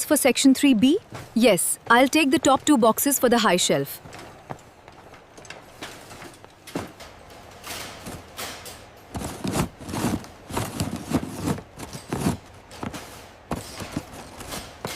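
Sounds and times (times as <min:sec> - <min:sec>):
rustling: 0:09.2 - 0:14.9.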